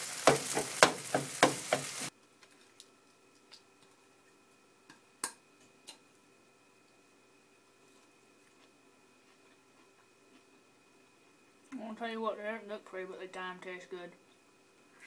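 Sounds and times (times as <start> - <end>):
batter sizzling in a frying pan: 0.0 - 2.2.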